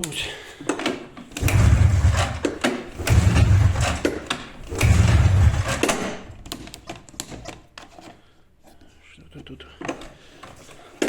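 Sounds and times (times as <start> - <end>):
electric starter whirring: 1.4 - 6.4.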